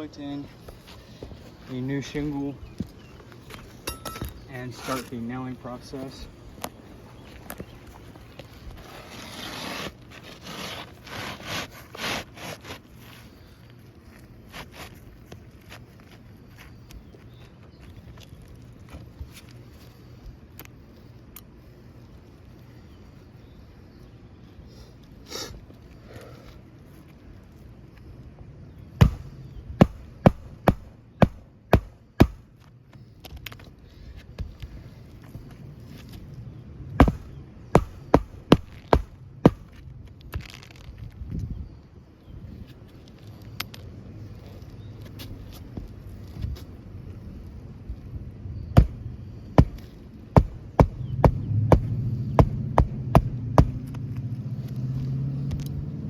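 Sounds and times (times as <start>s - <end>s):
hammer striking nails: 29.0s - 32.4s, 37.0s - 39.7s, 50.4s - 53.8s
low motor hum: 46.9s - 56.0s.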